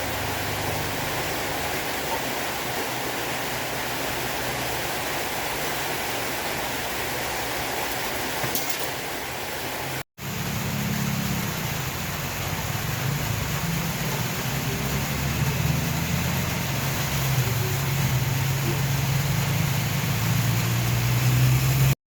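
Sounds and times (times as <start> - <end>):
low engine hum: 10.2 - 22.0.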